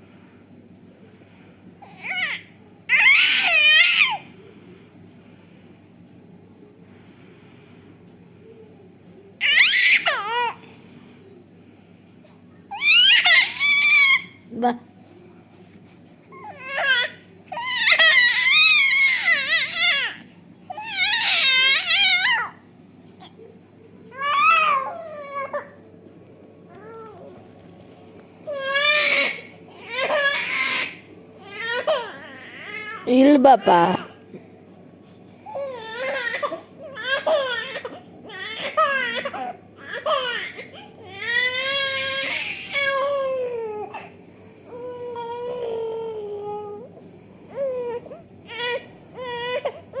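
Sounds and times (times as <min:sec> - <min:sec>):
baby crying: 0:01.8 - 0:04.2, 0:12.7 - 0:14.4, 0:16.3 - 0:22.6, 0:24.1 - 0:25.8, 0:28.5 - 0:33.1, 0:35.5 - 0:44.1, 0:47.5 - 0:50.0.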